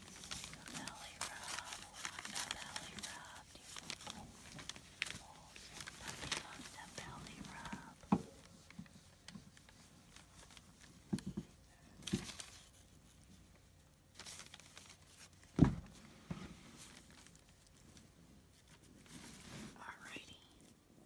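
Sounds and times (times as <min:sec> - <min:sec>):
soft rustling of bedding: 0:00.0 - 0:21.0.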